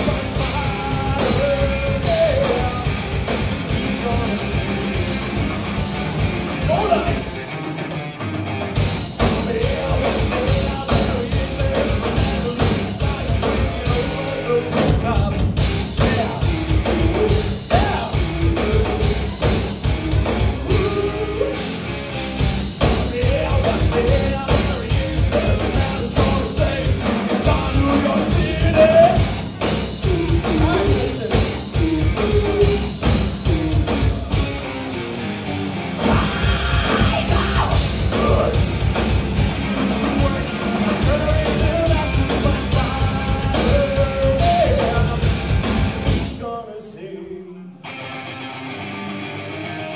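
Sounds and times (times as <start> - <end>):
live rock band playing: 0.0 - 46.7, 47.8 - 49.9
person singing: 9.2 - 21.8, 23.0 - 29.2, 30.0 - 34.5, 36.0 - 38.7, 39.7 - 45.6.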